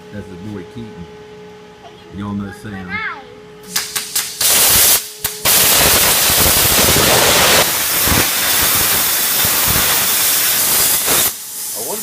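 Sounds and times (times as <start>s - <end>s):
cutting torch hissing: 3.7s - 12.0s.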